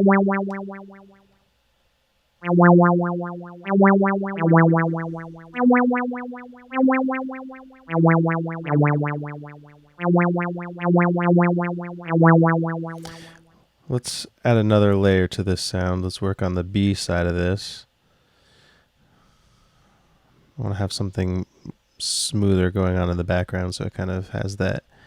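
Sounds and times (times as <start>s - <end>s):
pulsing saw-wave synth melody: 0.0s - 1.2s, 2.4s - 13.4s.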